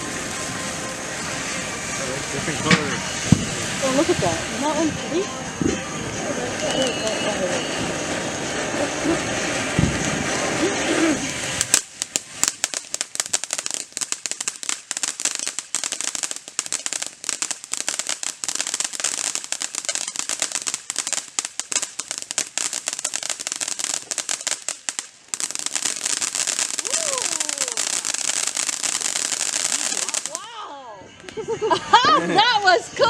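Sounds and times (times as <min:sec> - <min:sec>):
fireworks crackling and popping: 0:00.0 - 0:33.0.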